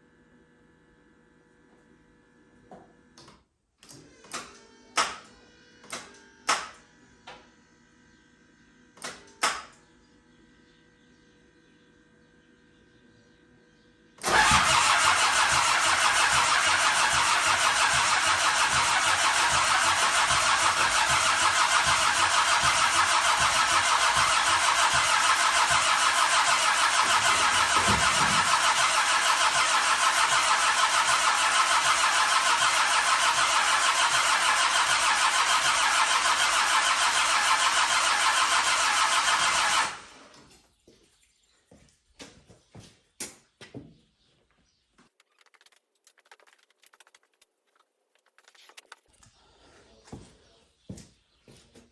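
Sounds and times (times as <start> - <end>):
diesel engine cranking on starter: 14.2 - 40.4.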